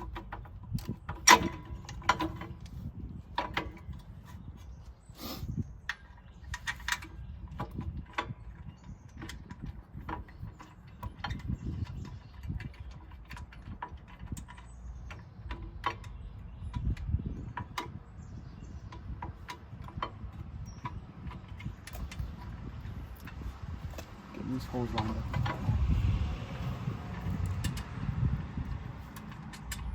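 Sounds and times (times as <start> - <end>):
low rumble: 25.1 - 29.9
metallic clicks of hand tools: 29.1 - 29.9.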